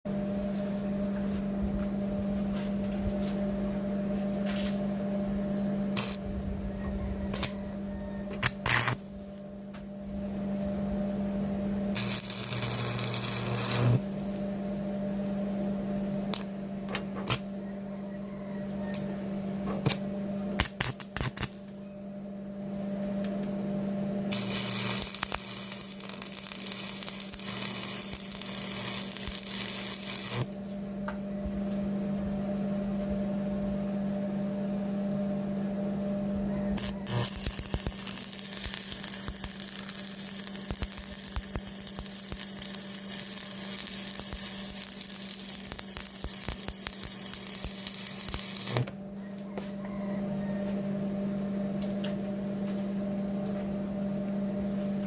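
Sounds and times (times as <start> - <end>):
welding machine humming: 2.8 - 17.6, 18.9 - 21.9, 24.2 - 30.8, 36.7 - 49.0
welding arc hissing and crackling: 6.0 - 6.2, 7.3 - 7.6, 8.4 - 10.6, 12.0 - 14.4, 20.6 - 21.7, 24.3 - 30.8, 36.8 - 48.9.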